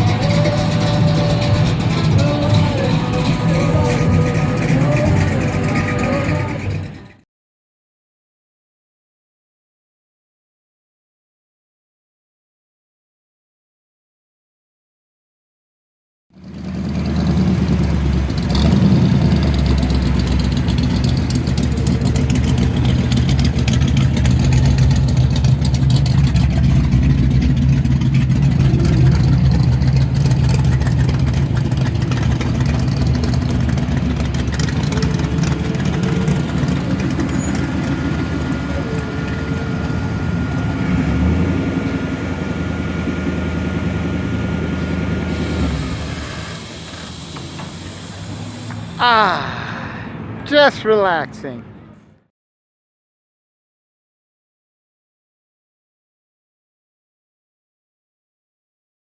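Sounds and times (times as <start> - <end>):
car engine idling: 0.0 - 7.2, 16.4 - 52.1.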